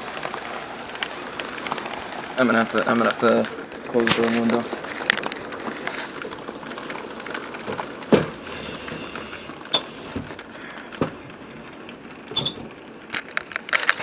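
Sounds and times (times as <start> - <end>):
heavy rain hissing: 0.0 - 14.0
window closing knocks: 7.7 - 10.4.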